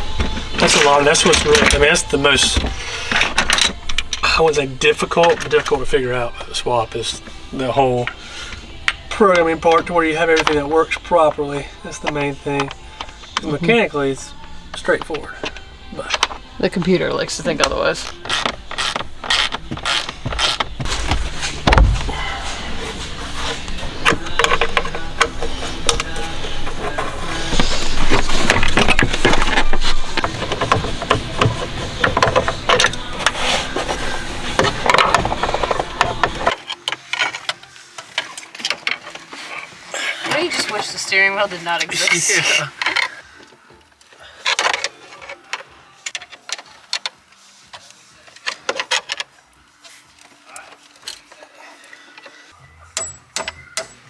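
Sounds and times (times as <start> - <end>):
scraping rustle: 17.4 - 43.2
heavy low thump: 20.9 - 22.4
sharp clicks and knocks: 23.7 - 34.0.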